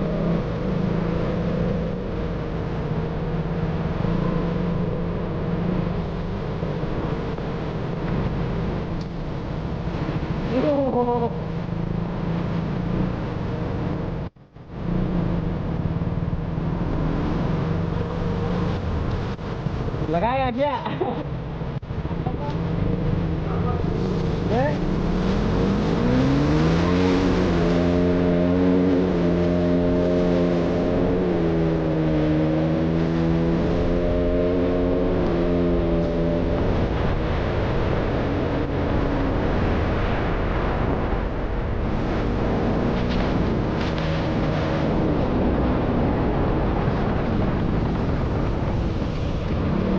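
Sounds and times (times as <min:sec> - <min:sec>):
low wind rumble: 0:00.0 - 0:49.9.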